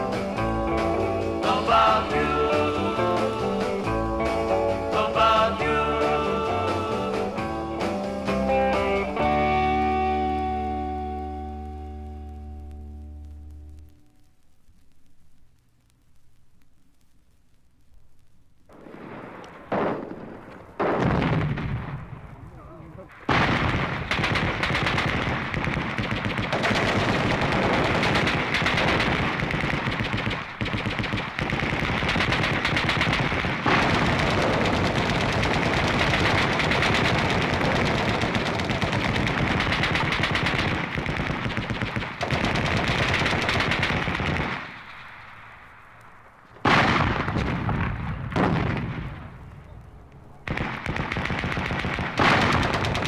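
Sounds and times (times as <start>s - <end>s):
machine-gun fire: 18.8s - 22.4s, 23.2s - 45.4s, 46.6s - 49.4s, 50.4s - 53.0s.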